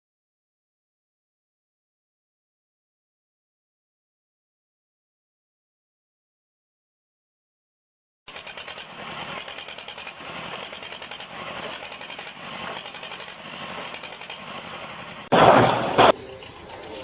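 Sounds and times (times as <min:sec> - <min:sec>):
loud rough noise: 0:08.3 - 0:17.0.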